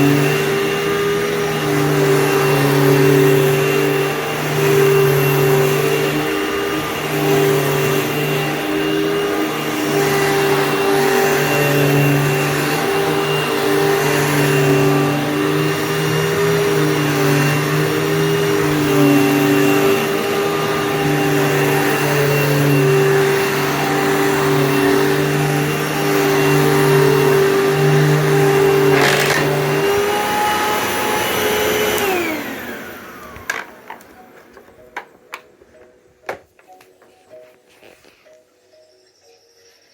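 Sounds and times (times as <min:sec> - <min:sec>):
vacuum cleaner running: 0:00.0 - 0:38.3.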